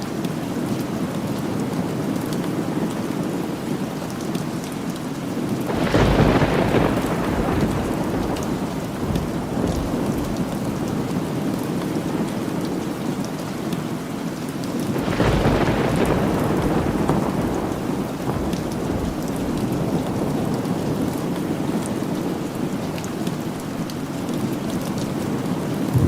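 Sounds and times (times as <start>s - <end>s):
steady rain falling: 0.0s - 26.0s
thunder rumbling: 5.7s - 12.2s, 14.9s - 21.8s, 25.8s - 26.0s.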